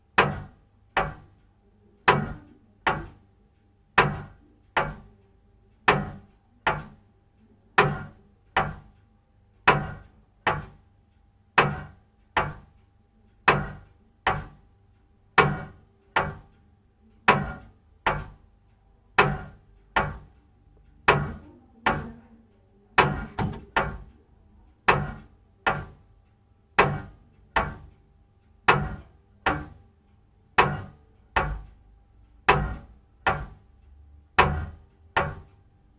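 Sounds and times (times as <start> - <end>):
clock ticking: 23.0 - 24.2.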